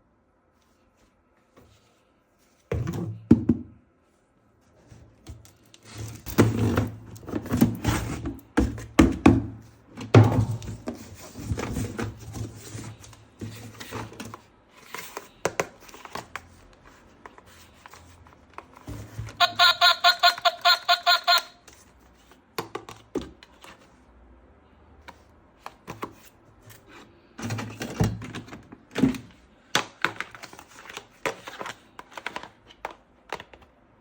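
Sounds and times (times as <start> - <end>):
toy box being handled: 10.4 - 22.4.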